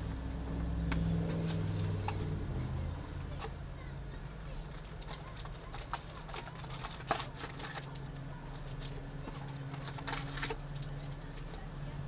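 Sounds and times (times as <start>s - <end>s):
steady low hum: 0.0s - 12.0s
foil packs crinkling: 4.7s - 11.6s.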